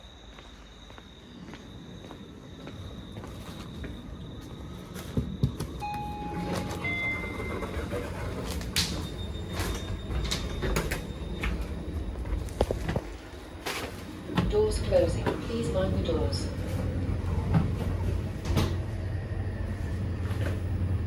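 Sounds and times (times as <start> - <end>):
train rumbling: 0.0 - 21.0
short high tones: 5.8 - 7.8.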